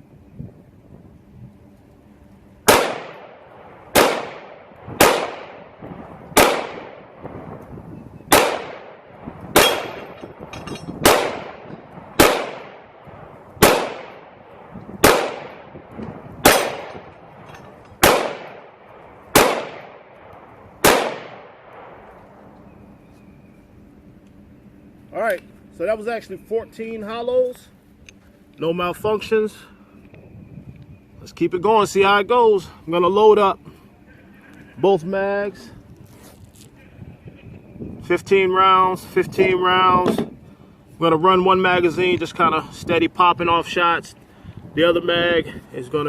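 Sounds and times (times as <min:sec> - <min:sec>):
pistol shots: 0:02.7 - 0:05.8, 0:06.4 - 0:07.3, 0:08.3 - 0:13.0, 0:13.6 - 0:15.8, 0:16.4 - 0:17.1, 0:18.0 - 0:22.0.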